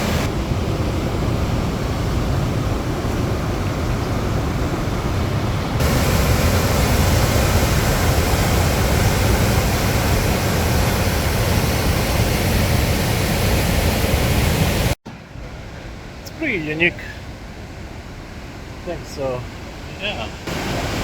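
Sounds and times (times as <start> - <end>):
river rushing through rock channel: 1.0 - 15.3, 19.0 - 21.0.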